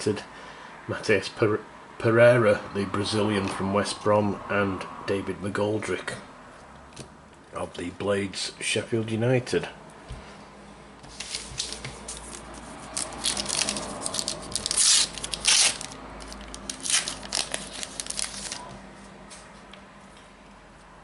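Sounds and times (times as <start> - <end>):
wrapper tearing and crinkling: 11.2 - 18.7.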